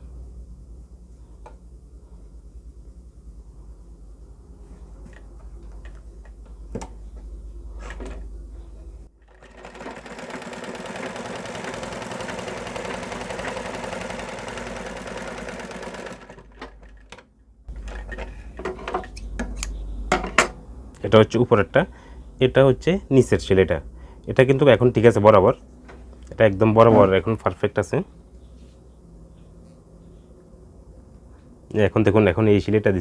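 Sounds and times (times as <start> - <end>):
sewing machine stitching: 9.2 - 17.2.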